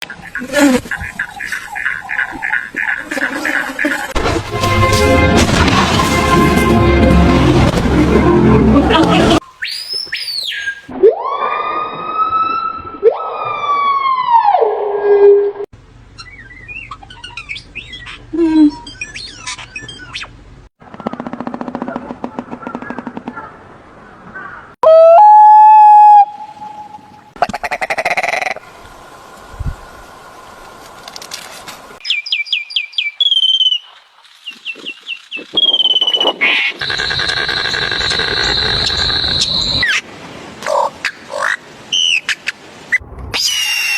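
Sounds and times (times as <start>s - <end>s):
chirping bird calls: 0.0s - 4.2s, 9.4s - 10.9s, 16.1s - 20.4s, 32.0s - 40.0s
long high-pitched bird note: 24.9s - 27.4s
long rising howls: 25.0s - 27.3s.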